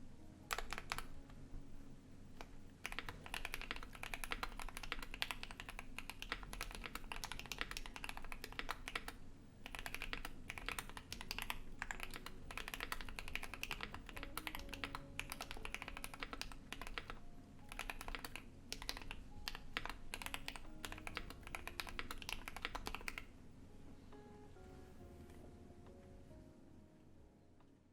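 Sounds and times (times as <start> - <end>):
low background hum: 0.0 - 27.9
soft music: 0.0 - 27.9
fast mechanical keyboard typing: 0.4 - 1.4, 2.4 - 23.3.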